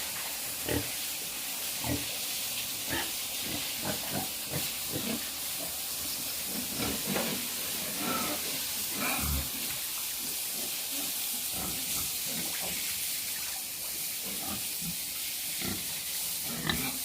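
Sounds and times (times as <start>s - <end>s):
steady hiss: 0.0s - 17.0s
pigs grunting: 6.6s - 9.7s, 15.6s - 17.0s.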